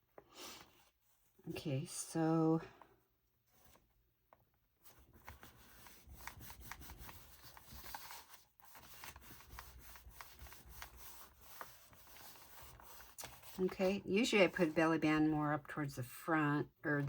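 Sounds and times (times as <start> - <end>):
paper rustling and scraping: 3.5 - 3.9, 4.8 - 14.8.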